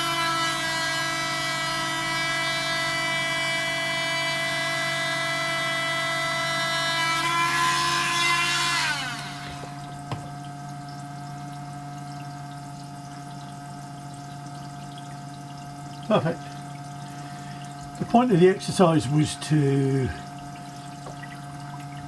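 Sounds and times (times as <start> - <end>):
rotary tool whining: 0.0 - 10.2
faint steady hum: 0.0 - 22.0.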